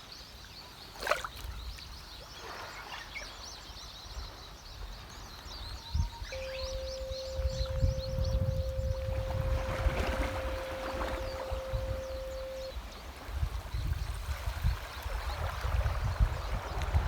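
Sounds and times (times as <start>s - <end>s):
steady pure tone: 6.0s - 12.8s
sea water sloshing: 6.2s - 12.8s.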